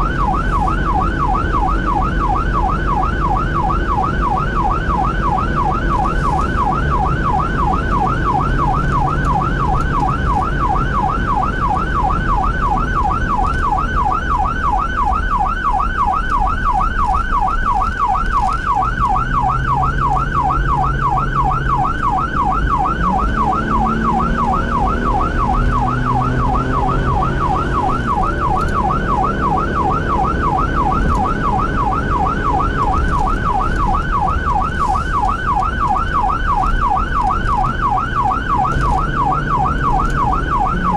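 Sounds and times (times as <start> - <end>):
electronic siren yelping: 0.0 - 40.9.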